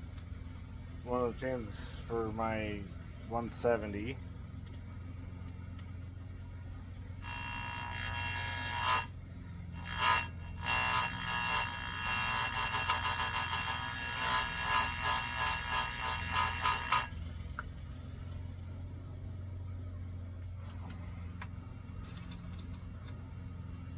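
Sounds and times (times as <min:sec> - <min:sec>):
grinder motor humming: 0:07.0 - 0:18.4
grinding wheel on saw chain: 0:07.2 - 0:17.4.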